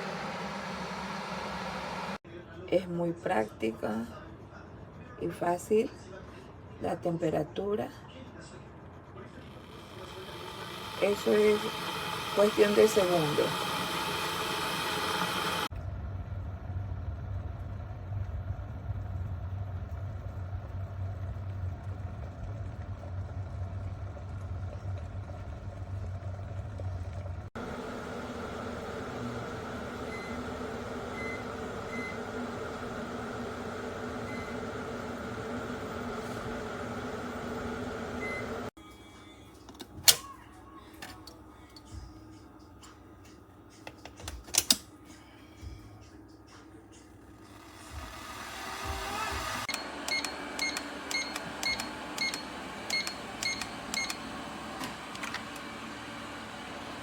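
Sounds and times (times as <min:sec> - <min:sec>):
electric kettle hum: 0:00.0 - 0:02.2, 0:09.5 - 0:15.8, 0:17.8 - 0:38.8, 0:47.1 - 0:57.0.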